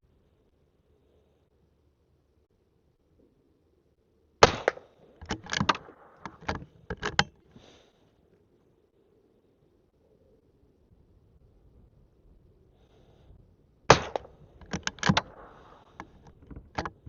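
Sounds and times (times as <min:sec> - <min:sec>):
rifle shot: 0:04.4 - 0:06.3, 0:13.9 - 0:15.9
rifle lever metallic clicks: 0:04.4 - 0:07.4, 0:14.0 - 0:17.0.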